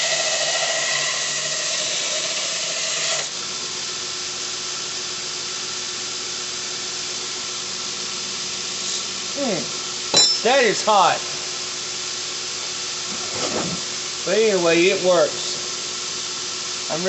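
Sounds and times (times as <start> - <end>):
steel blade grinding on belt: 0.0 - 3.3.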